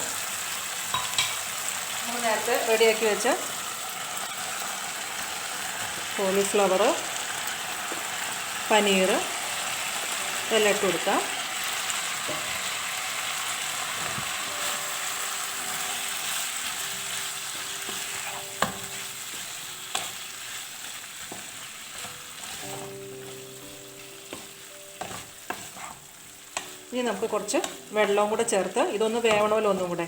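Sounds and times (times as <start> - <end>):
food sizzling in a pan: 0.0 - 30.0
spoon knocking against pan: 0.9 - 1.4, 29.2 - 29.9.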